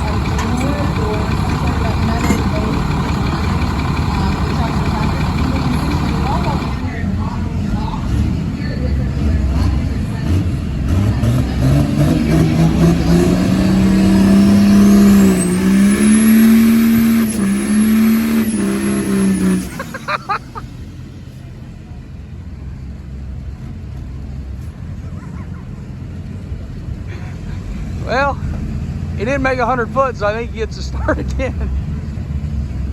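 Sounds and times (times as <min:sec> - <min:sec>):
diesel truck engine revving hard: 0:00.0 - 0:21.1
crowd noise: 0:00.0 - 0:30.8.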